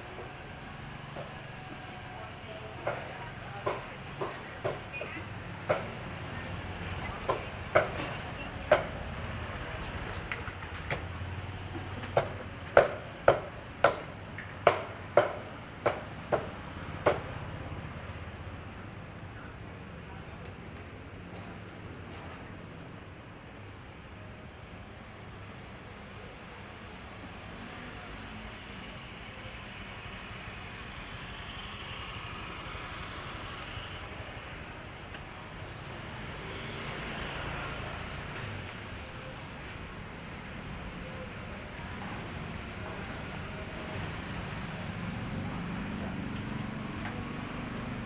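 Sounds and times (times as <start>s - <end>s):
motor vehicle engines running: 0.0s - 48.0s
sharp knocks: 12.2s - 17.3s.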